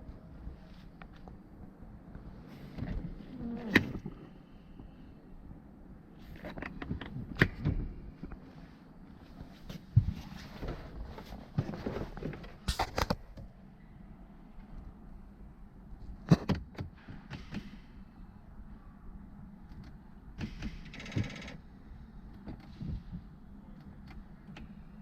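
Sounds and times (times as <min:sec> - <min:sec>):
clicks and knocks from a car: 0:16.2 - 0:17.8.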